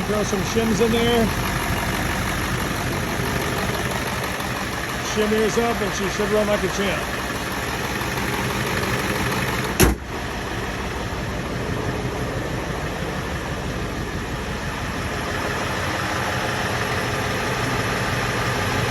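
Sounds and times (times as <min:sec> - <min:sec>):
diesel engine idling: 0:00.0 - 0:18.9
sharp knock: 0:09.8 - 0:10.0.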